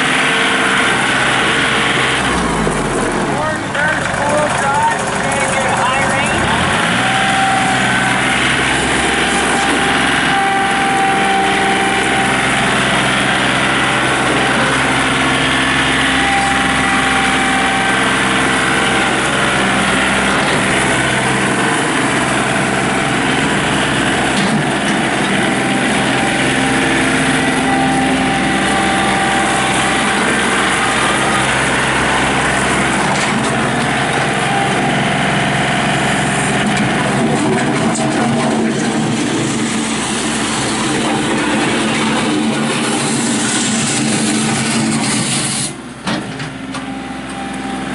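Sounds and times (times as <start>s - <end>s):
tractor diesel engine running: 0.0s - 47.9s.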